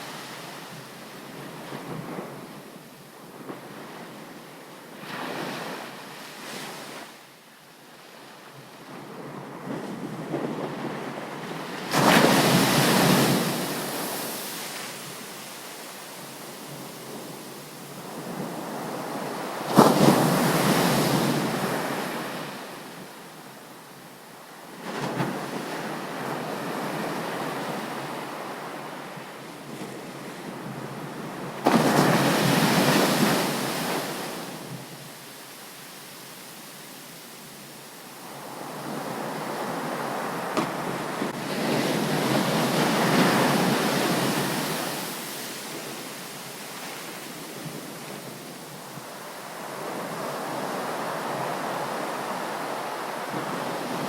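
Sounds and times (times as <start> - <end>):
waves breaking on a beach: 0.0 - 54.0.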